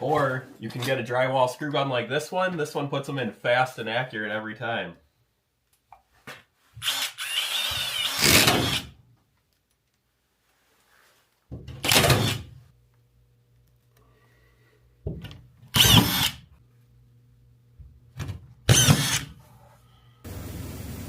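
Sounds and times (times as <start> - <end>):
screw gun whirring: 6.8 - 8.9, 11.8 - 12.5, 15.7 - 16.4, 18.7 - 19.4.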